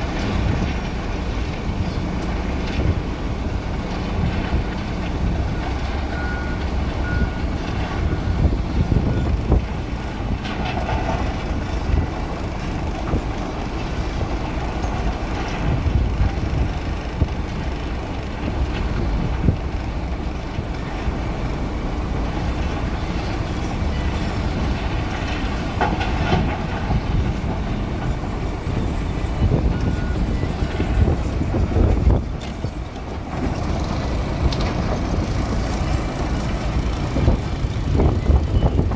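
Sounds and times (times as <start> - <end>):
diesel engine rumbling: 0.0 - 38.9.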